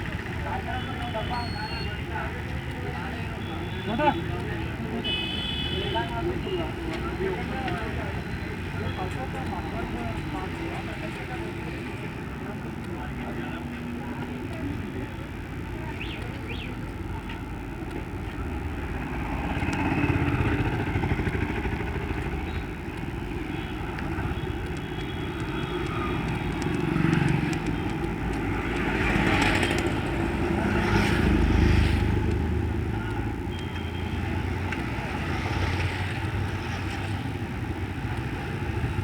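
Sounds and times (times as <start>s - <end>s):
road and wind noise: 0.0s - 39.0s
motorcycle engine running: 9.8s - 39.0s.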